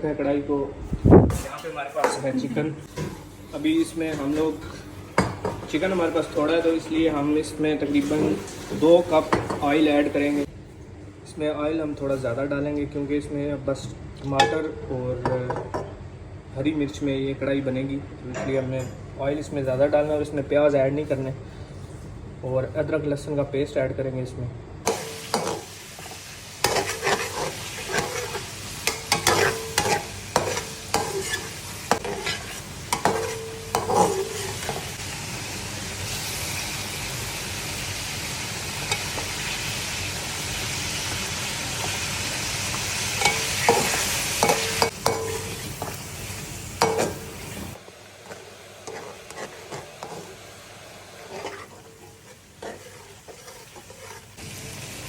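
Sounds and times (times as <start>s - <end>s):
spatula scraping pan: 24.9s - 35.0s, 42.7s - 46.1s, 46.8s - 54.4s
chicken sizzling in oil: 24.9s - 55.0s.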